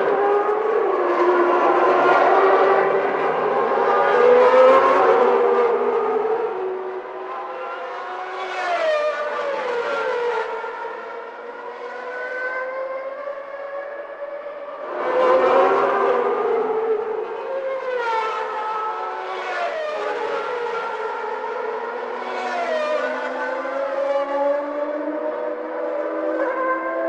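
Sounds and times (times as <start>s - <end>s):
racing car engines high revs: 0.0s - 13.0s.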